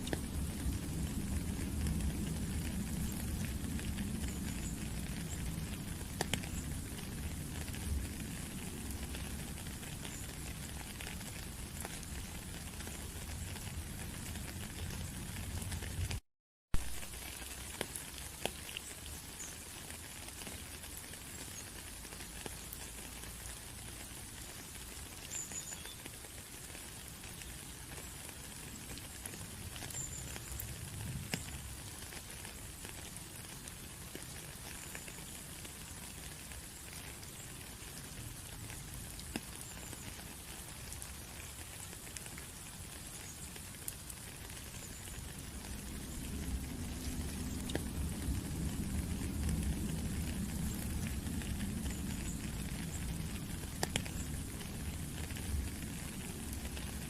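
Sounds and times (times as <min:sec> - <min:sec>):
raindrops ticking: 0:00.0 - 0:16.2, 0:16.8 - 0:57.0
steady rain: 0:00.0 - 0:57.0.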